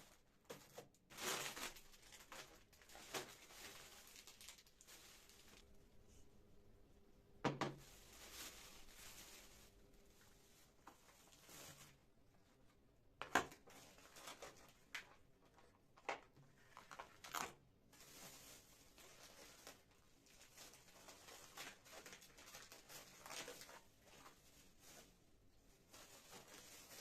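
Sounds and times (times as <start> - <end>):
rustling: 0.5 - 6.2, 7.8 - 12.4, 16.8 - 27.0.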